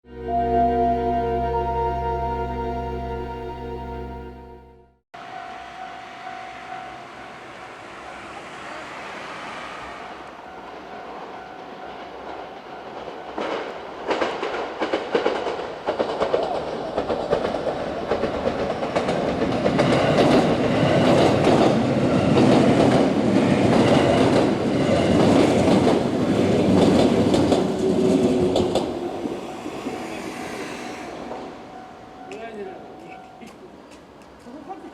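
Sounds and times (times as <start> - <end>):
level crossing bell ringing: 0.1 - 7.2, 31.7 - 33.5
train wheels clattering over rail joints: 13.0 - 29.0.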